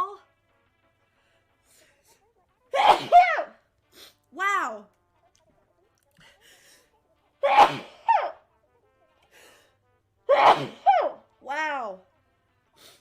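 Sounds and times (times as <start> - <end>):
person sneezing: 2.7 - 4.2, 7.4 - 8.4, 10.3 - 11.2
faint in-breaths: 6.1 - 7.0, 9.2 - 9.8, 12.7 - 13.0.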